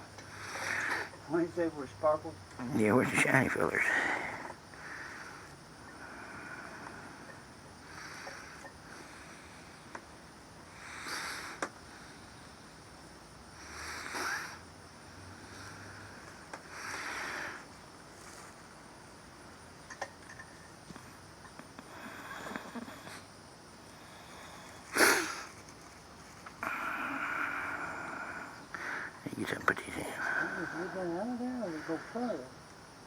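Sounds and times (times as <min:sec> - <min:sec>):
faint breathing: 0:03.8 - 0:10.0, 0:13.5 - 0:18.5, 0:26.6 - 0:29.2, 0:30.0 - 0:32.5.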